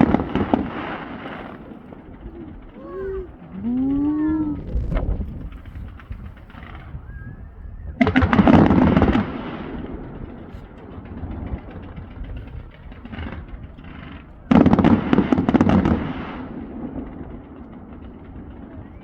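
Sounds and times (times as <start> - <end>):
fireworks crackling pops: 0.0 - 3.2, 8.0 - 19.0.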